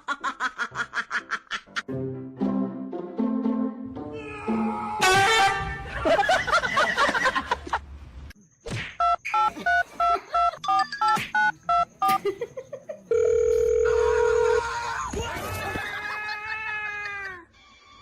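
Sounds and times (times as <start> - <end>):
steady telephone tone: 13.1 - 14.6.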